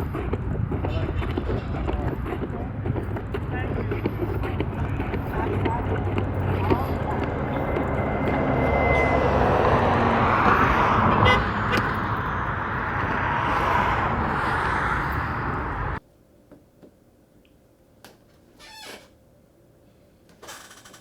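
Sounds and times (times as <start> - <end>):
road traffic: 0.0 - 16.1.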